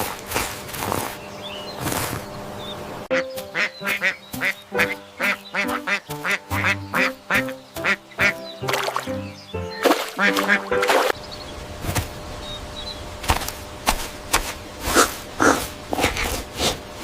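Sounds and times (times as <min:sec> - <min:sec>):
ducks quacking: 0:03.1 - 0:11.2
background music with sustained notes: 0:03.1 - 0:11.4.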